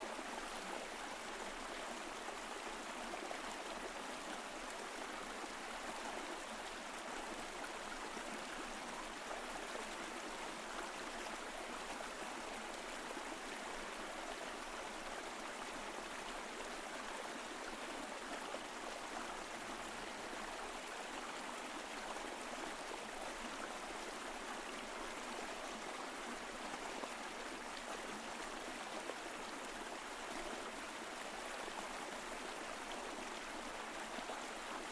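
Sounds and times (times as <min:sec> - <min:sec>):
stream flowing over rocks: 0:00.0 - 0:34.9.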